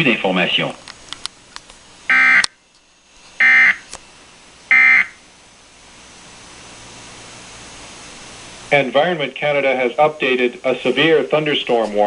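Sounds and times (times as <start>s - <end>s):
faint radio static hiss: 0.0s - 12.0s
buzzy digital data bursts: 2.1s - 2.4s.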